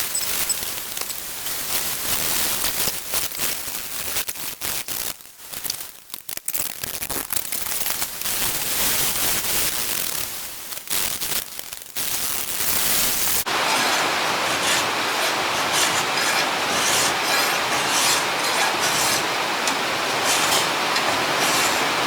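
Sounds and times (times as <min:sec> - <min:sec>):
hand file rasping on steel blade: 0:13.5 - 0:22.0.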